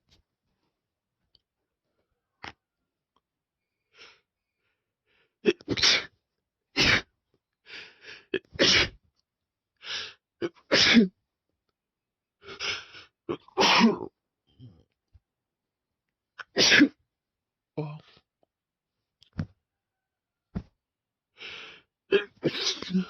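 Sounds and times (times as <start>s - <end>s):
soft in-breaths: 3.8s - 5.4s, 7.6s - 8.3s, 21.4s - 21.9s
person sneezing: 5.5s - 6.1s, 6.8s - 7.1s, 8.4s - 9.0s, 10.7s - 11.1s, 13.3s - 14.1s, 16.4s - 17.0s, 22.1s - 23.0s.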